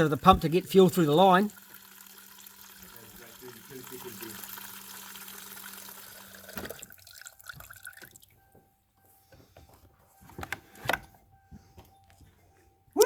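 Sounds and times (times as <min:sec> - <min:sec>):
fuel pouring into container: 0:00.0 - 0:08.4
fuel pump humming: 0:00.0 - 0:13.0
dripping and small knocks: 0:05.4 - 0:08.4.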